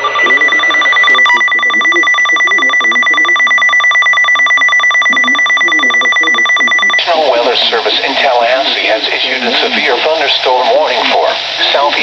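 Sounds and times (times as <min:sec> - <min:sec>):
rapid electronic beeping alarm: 0:00.0 - 0:07.4
steady high tone: 0:00.0 - 0:12.0.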